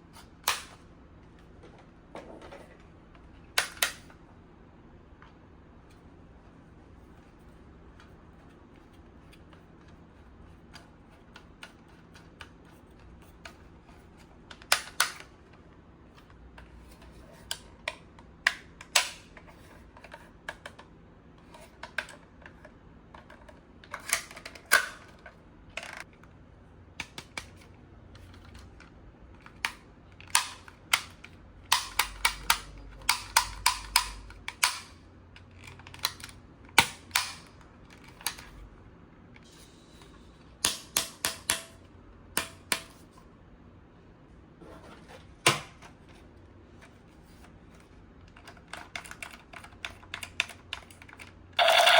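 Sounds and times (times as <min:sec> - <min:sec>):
toy blaster mechanism clicking: 0:51.6 - 0:51.9.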